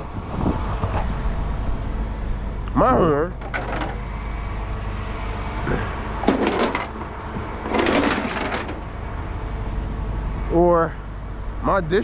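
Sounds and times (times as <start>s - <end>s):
truck engine and road rumble: 0.0s - 12.0s
metallic jingling rattles: 6.2s - 8.9s.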